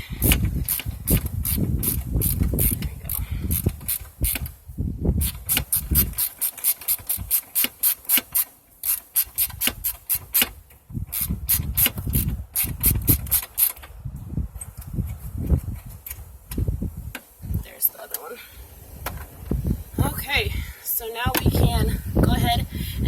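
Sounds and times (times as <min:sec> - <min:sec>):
ratchet wrench clicking: 0:00.1 - 0:04.6, 0:05.2 - 0:13.9
tool handling and rubbing: 0:05.2 - 0:20.2.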